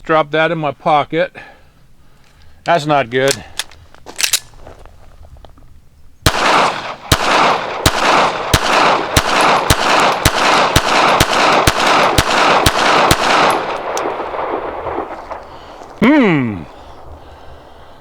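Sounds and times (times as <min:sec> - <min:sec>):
pistol shots: 0:06.2 - 0:16.0
rolling echo: 0:06.3 - 0:18.0.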